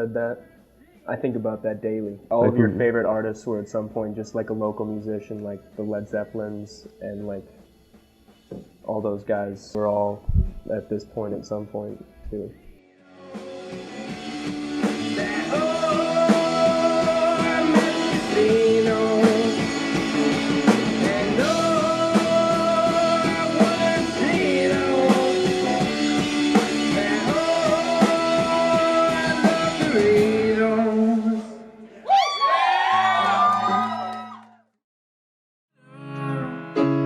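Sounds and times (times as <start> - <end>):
person singing: 13.1 - 31.8, 35.8 - 37.0
electric guitar: 13.2 - 31.4, 35.8 - 37.0
drum kit: 13.4 - 31.4.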